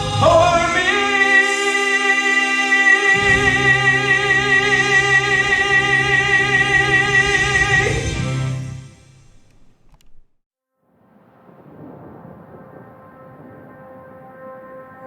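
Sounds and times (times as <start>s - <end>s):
gospel band playing: 0.0s - 8.9s.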